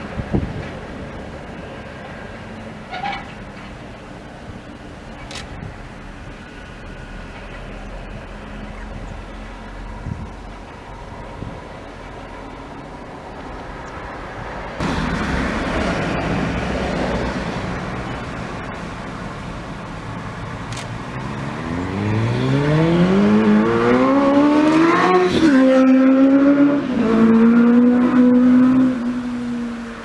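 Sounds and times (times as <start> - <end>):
road noise: 0.0 - 30.0
vehicle engine revving: 14.8 - 30.0.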